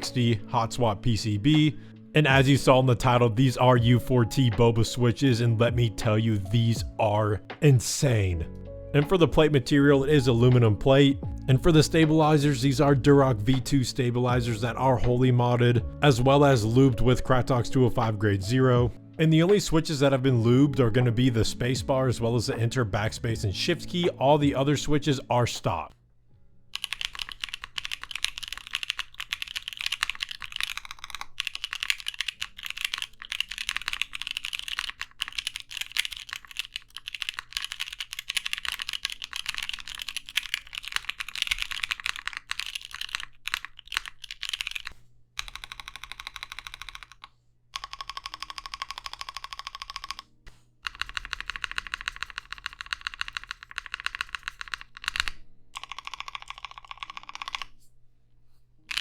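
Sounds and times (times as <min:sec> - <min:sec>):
mechanical keyboard typing: 0:26.8 - 0:57.7.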